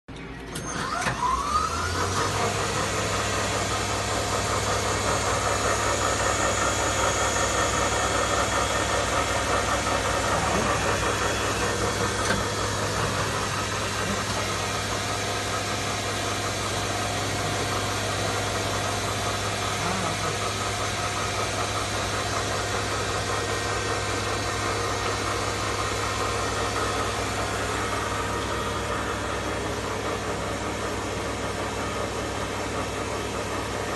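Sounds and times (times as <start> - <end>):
lathe running with whine: 0.3 - 33.9
constant low hum: 2.4 - 23.7.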